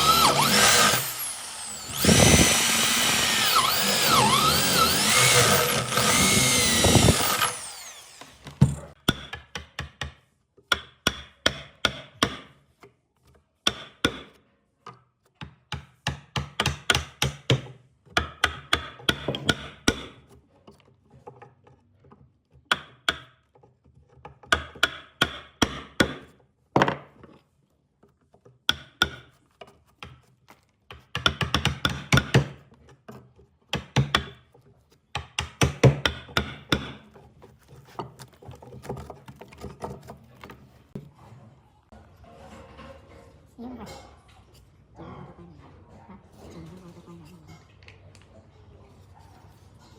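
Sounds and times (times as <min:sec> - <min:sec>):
tools knocking on wood: 0:01.9 - 0:12.6, 0:13.6 - 0:20.3, 0:21.2 - 0:27.4, 0:30.9 - 0:41.1.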